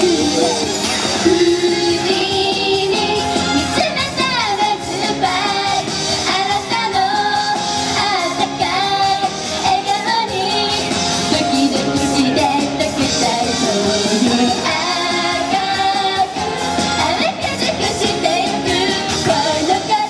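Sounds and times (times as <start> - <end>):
girls singing pop song: 1.2 - 20.0.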